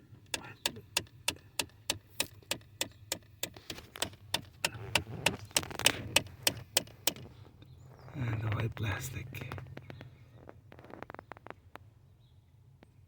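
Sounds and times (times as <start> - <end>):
rapid even ticking actuator: 0.3 - 7.3
car door opening: 3.4 - 7.6.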